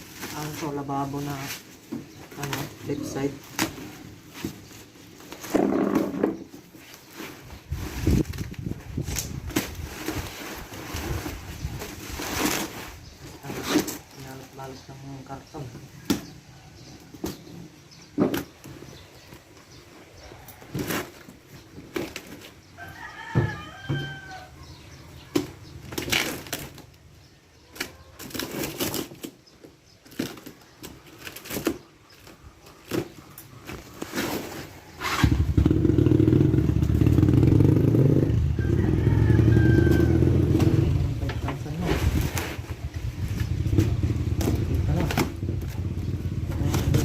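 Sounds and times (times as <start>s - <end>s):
rooster crowing: 22.8s - 24.8s, 38.3s - 40.6s.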